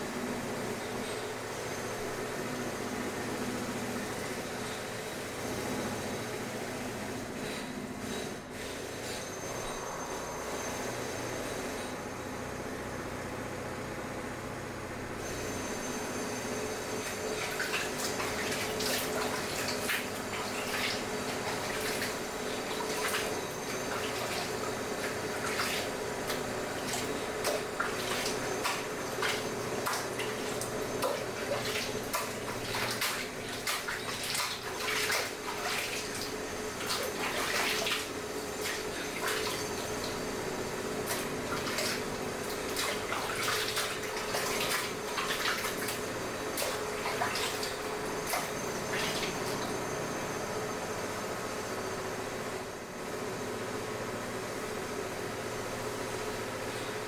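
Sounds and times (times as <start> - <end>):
rushing machine hum: 13.6 - 51.6.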